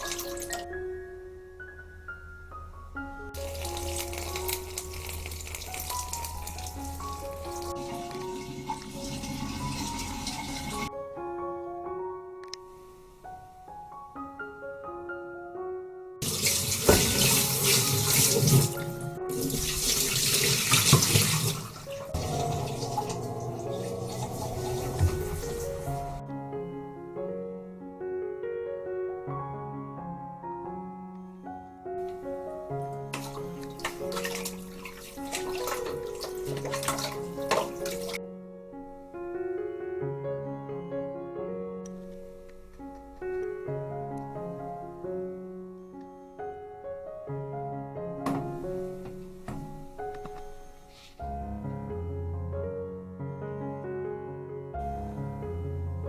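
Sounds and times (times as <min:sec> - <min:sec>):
water running and splashing: 0:00.0 - 0:00.6, 0:03.4 - 0:10.9, 0:16.2 - 0:26.2, 0:33.2 - 0:38.2
piano background music: 0:00.0 - 0:56.0.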